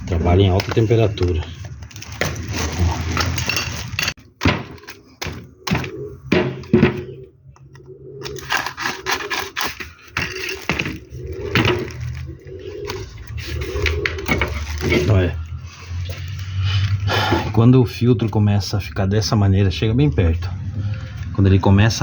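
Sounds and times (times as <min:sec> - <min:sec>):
scraping: 0:00.0 - 0:07.2, 0:07.8 - 0:17.5
sharp knocks: 0:04.4 - 0:07.2.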